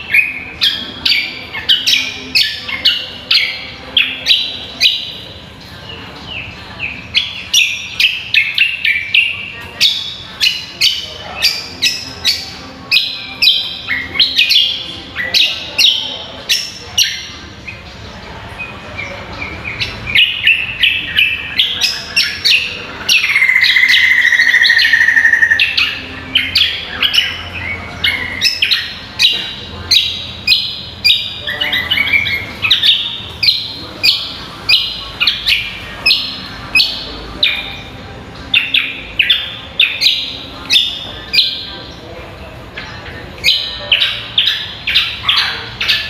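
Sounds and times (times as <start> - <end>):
bird chirping loudly: 19.7 - 41.7.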